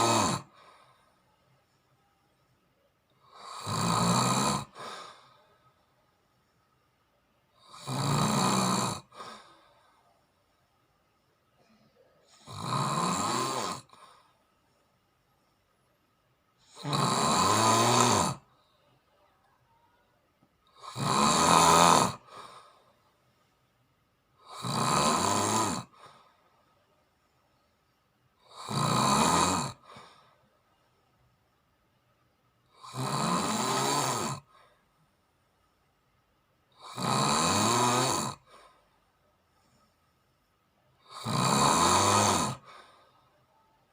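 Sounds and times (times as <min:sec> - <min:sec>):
person snoring: 0:00.0 - 0:01.0, 0:03.2 - 0:05.6, 0:07.6 - 0:10.0, 0:12.3 - 0:14.4, 0:16.6 - 0:18.6, 0:20.7 - 0:22.8, 0:24.4 - 0:26.3, 0:28.4 - 0:30.3, 0:32.7 - 0:34.6, 0:36.7 - 0:38.8, 0:41.0 - 0:43.1.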